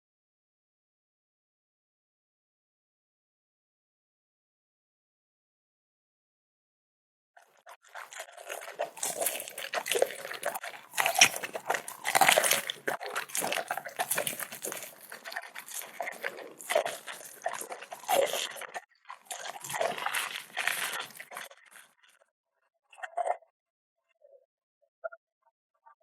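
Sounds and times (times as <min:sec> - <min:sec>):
dog chewing food: 0:07.7 - 0:21.8.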